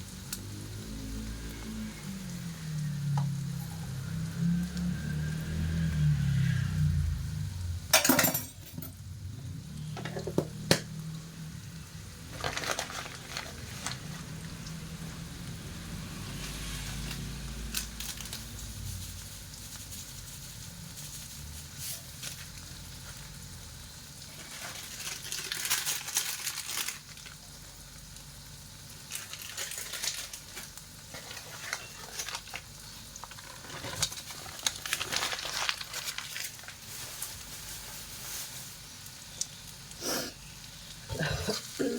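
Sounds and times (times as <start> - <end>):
rice sizzling in a pan: 0.0 - 8.4, 9.0 - 41.9
stirring scrapes in a pan: 18.6 - 23.3, 29.8 - 35.3, 35.9 - 38.9.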